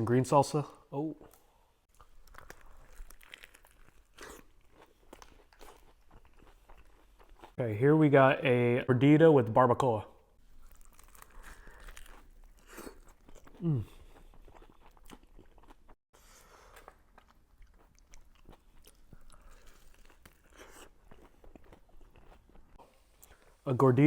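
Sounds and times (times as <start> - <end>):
crunching while chewing food: 1.9 - 7.6, 10.4 - 23.6.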